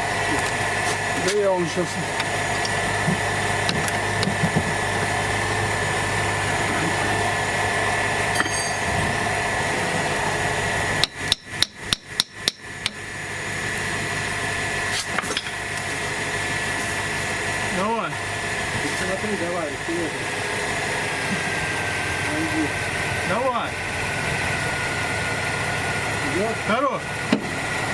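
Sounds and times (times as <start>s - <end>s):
car engine idling: 0.0s - 27.9s
hammer striking metal: 8.3s - 8.9s, 11.0s - 13.0s.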